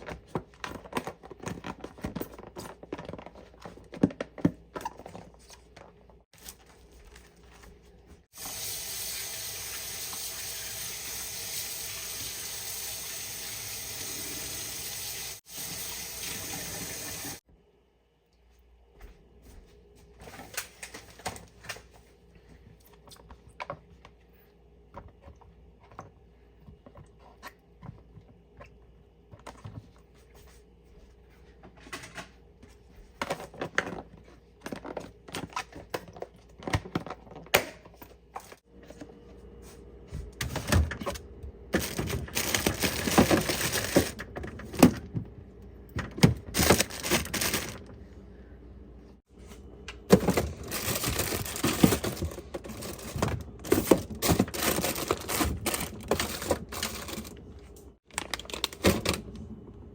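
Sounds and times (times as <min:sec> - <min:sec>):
plastic packaging rustling: 0:00.0 - 0:08.3, 0:41.7 - 0:45.0, 0:46.2 - 0:48.0, 0:49.6 - 0:59.4
packages being set down: 0:41.8 - 0:45.2, 0:46.0 - 0:47.9, 0:50.0 - 0:57.4.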